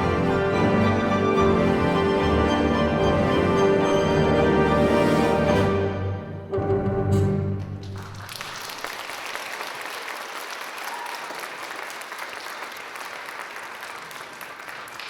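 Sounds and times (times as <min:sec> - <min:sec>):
audience applause: 0:07.6 - 0:15.0.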